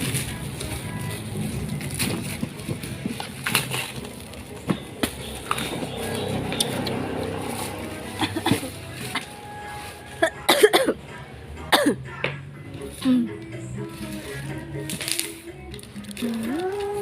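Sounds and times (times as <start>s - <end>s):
handling clicks and knocks: 1.8s - 9.3s.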